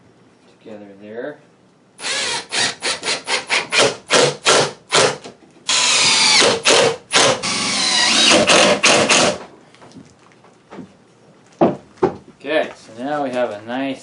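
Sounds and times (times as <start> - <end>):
power drill running: 2.0 - 9.4.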